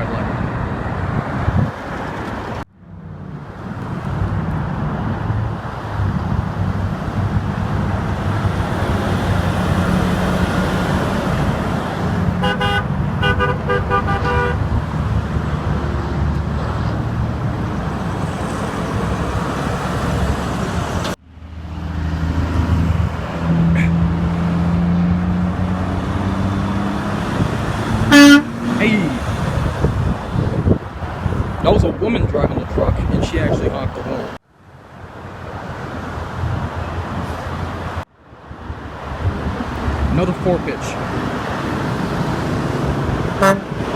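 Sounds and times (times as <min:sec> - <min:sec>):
traffic noise: 0:00.0 - 0:43.9
vehicle horn short blasts: 0:12.4 - 0:14.6, 0:28.1 - 0:28.6, 0:43.4 - 0:43.7.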